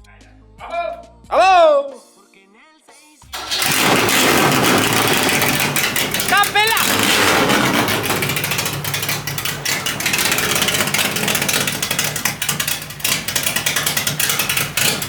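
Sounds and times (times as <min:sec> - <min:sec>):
car engine running unevenly: 0:03.4 - 0:15.0.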